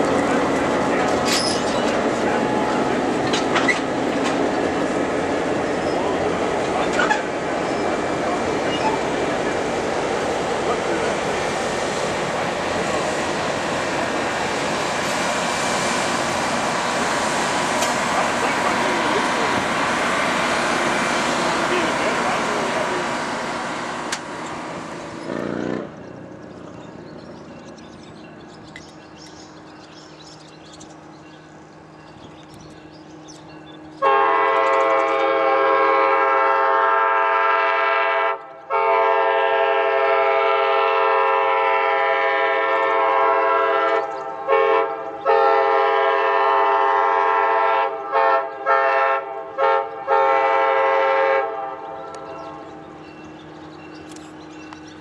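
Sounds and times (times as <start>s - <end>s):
train air horn blasts: 34.0s - 52.3s.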